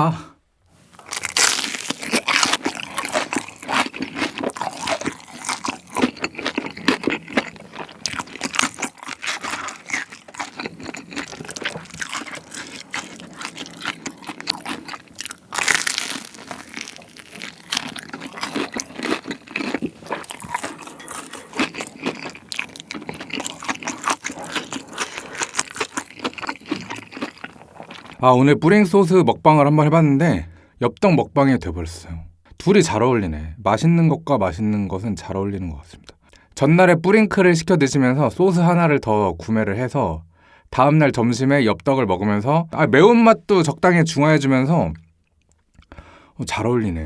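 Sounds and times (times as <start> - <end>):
crispy food crunching and chewing: 0.9 - 28.3
loud bite: 1.0 - 28.2.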